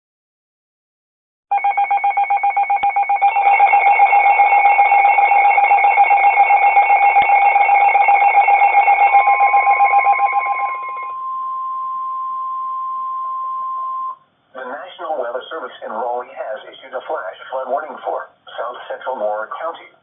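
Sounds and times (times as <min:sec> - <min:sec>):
steady alert tone: 0:01.5 - 0:12.3
pulsing electronic alarm tone: 0:01.5 - 0:14.2.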